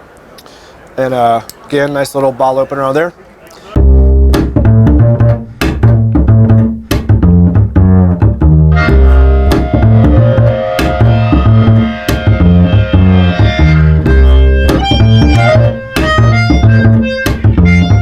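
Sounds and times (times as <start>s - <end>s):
music with low bass line: 3.8s - 18.0s
sharp percussive hits: 8.8s - 17.6s.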